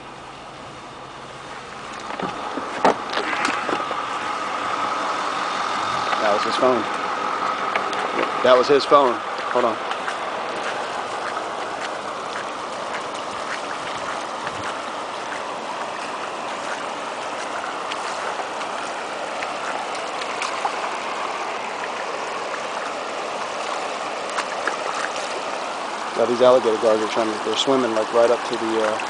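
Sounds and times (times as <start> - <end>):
floodwater rushing across road: 0.0 - 29.0.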